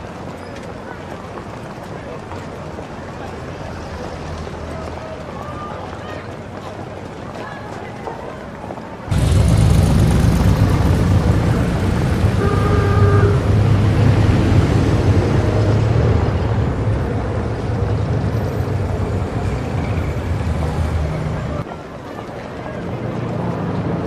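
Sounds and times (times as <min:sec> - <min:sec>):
vehicle engine deep rumble: 0:09.1 - 0:21.6
horn toot: 0:11.7 - 0:14.0.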